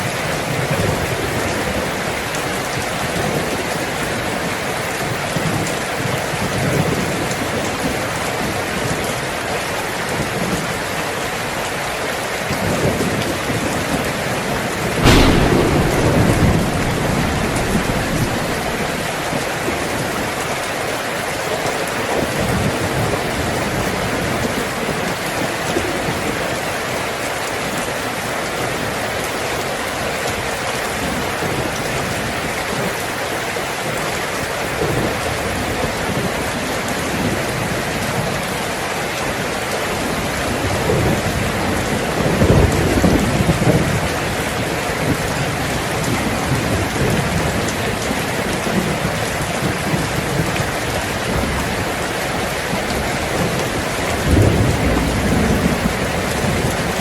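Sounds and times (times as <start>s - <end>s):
rain on a tin roof: 0.0s - 57.0s
thunder rumbling: 14.8s - 20.9s, 46.6s - 57.0s.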